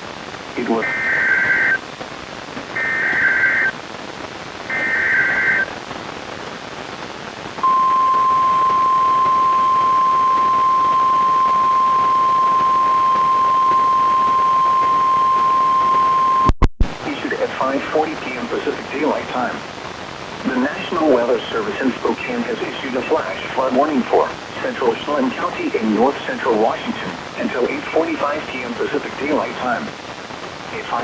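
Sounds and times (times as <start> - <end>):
static hiss: 0.0 - 31.0
data bursts: 0.7 - 1.8, 2.8 - 3.7, 4.7 - 5.7, 7.6 - 16.8
warning alarm tone: 7.6 - 16.5
clicks: 7.6 - 17.0.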